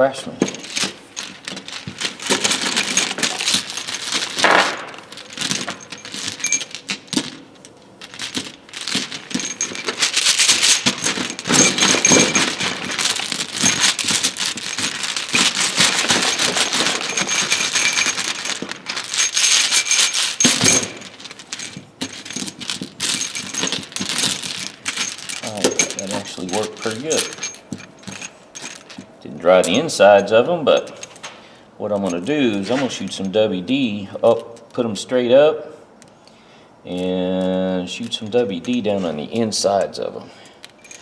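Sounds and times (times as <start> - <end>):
metal sockets clinking and rattling: 0.4 - 29.9, 40.6 - 41.0.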